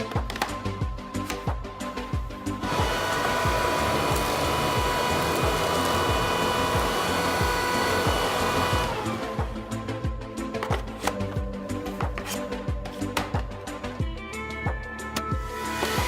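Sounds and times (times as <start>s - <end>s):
background music with steady beat: 0.0s - 16.0s
vacuum cleaner running: 2.6s - 9.9s, 15.5s - 16.0s.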